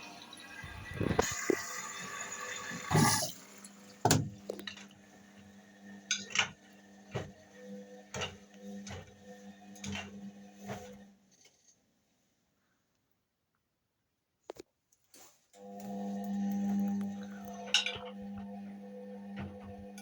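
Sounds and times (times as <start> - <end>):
washing machine motor hum: 0.0 - 11.2, 15.6 - 20.0.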